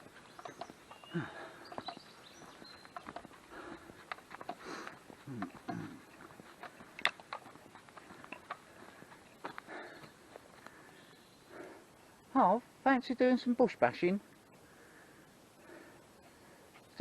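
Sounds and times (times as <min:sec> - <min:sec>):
faint bird chirps: 0:00.0 - 0:03.1
short low vocal sounds: 0:05.2 - 0:06.1.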